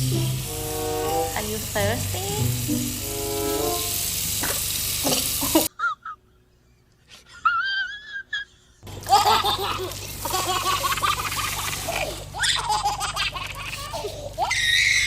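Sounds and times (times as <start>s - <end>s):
baby squealing and laughing: 11.8s - 15.0s.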